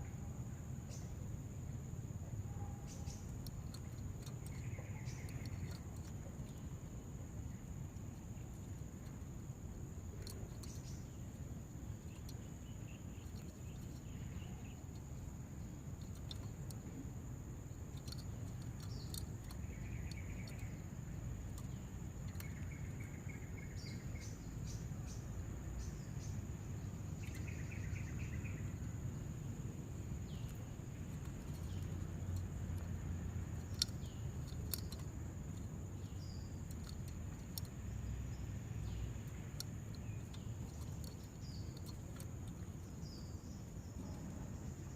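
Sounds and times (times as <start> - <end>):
faint chirping trills: 0.0 - 44.9
high insect drone: 0.0 - 44.9
low rumbling background noise: 0.0 - 44.9.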